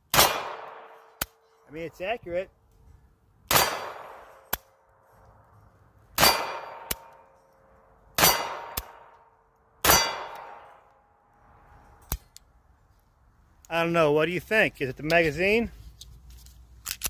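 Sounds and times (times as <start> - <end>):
pistol shots: 0.1 - 1.0, 3.5 - 4.6, 6.2 - 7.1, 8.2 - 9.1, 9.8 - 10.7.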